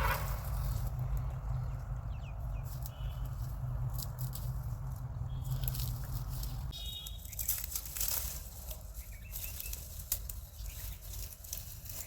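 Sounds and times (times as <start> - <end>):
rustling and crinkling handling: 2.6 - 12.0.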